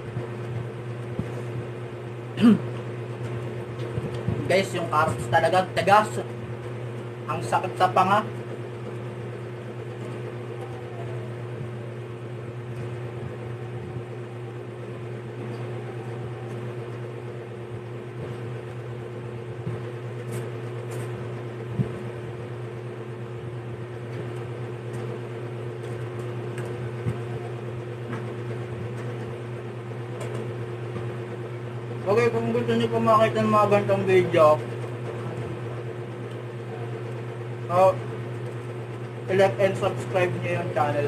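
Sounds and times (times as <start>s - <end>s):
low appliance hum: 0.0s - 41.0s.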